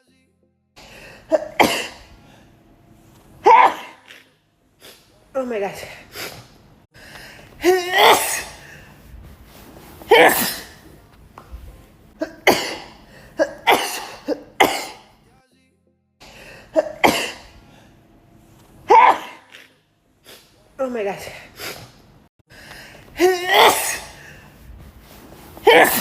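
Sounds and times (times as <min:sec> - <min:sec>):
woman sneezing: 0:01.3 - 0:02.1, 0:03.4 - 0:04.3, 0:07.6 - 0:08.8, 0:10.0 - 0:10.9, 0:12.2 - 0:15.1, 0:16.7 - 0:17.6, 0:18.9 - 0:19.7, 0:23.2 - 0:24.3, 0:25.6 - 0:26.0.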